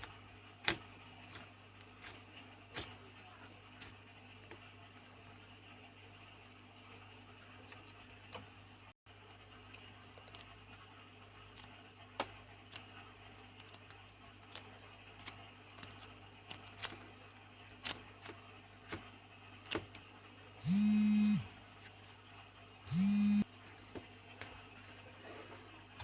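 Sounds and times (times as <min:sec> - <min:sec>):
foam clay clicking and crackling: 0:00.0 - 0:06.9, 0:09.4 - 0:20.0
steady low hum: 0:20.6 - 0:26.0.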